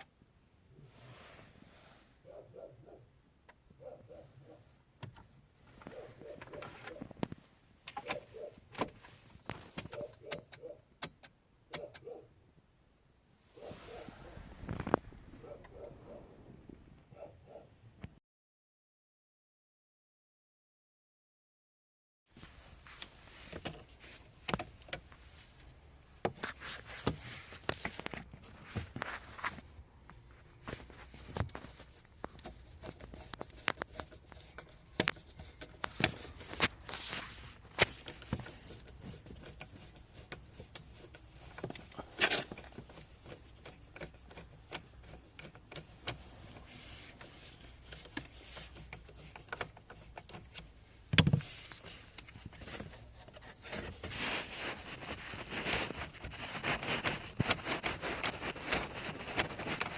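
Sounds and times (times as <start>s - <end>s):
handling clicks taps and knocks: 5.0s - 12.1s, 23.0s - 25.2s, 30.1s - 36.9s, 37.8s - 54.0s
rustling: 26.4s - 59.9s.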